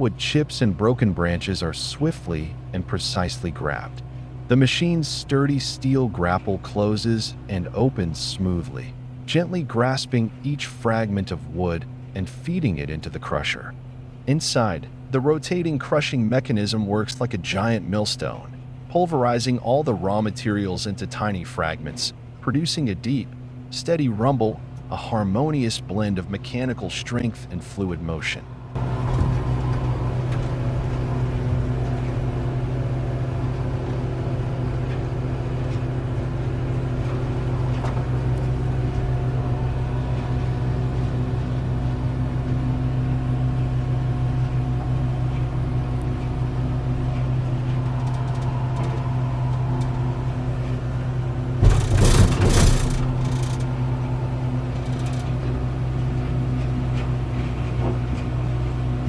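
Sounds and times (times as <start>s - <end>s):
wood crusher rumbling: 24.6s - 59.0s.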